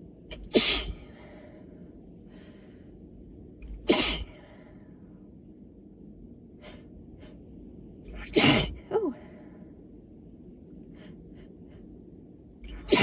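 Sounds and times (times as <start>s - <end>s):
quiet breaths: 0.3s - 13.0s
woman sneezing: 0.5s - 0.9s, 3.9s - 4.2s, 8.3s - 9.0s.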